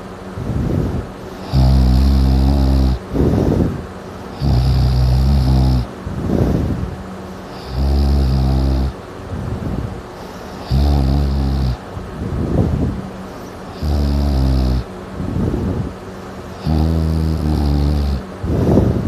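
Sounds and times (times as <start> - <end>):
loud rattling snores: 0.7 - 9.0, 10.2 - 11.8, 13.7 - 14.9, 16.5 - 18.8.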